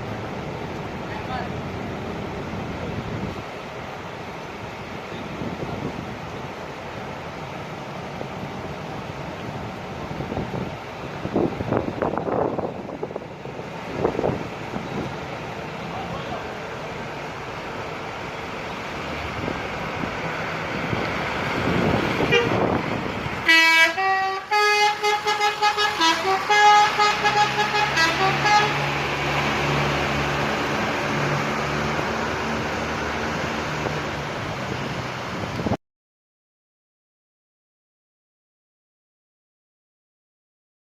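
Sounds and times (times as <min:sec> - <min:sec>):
low engine hum: 0:00.0 - 0:35.8
road noise: 0:00.0 - 0:35.8
musical air horn tune: 0:22.3 - 0:22.6, 0:23.4 - 0:28.9.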